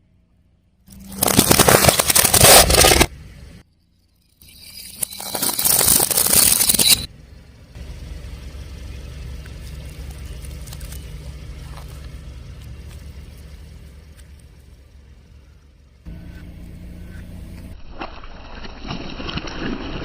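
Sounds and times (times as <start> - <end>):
car engine and tyres rumbling: 0.0 - 17.9
tyre crushing something crunchy: 0.9 - 3.1, 5.1 - 7.1.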